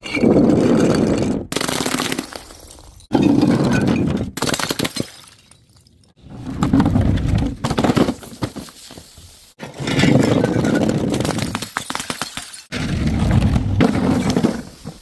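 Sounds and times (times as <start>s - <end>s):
glass bottles shattering: 10.1s - 12.7s.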